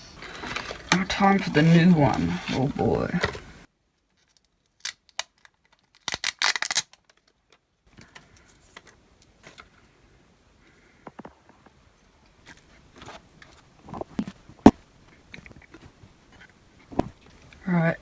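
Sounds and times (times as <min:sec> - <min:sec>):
small parts clicking: 0:04.1 - 0:09.3.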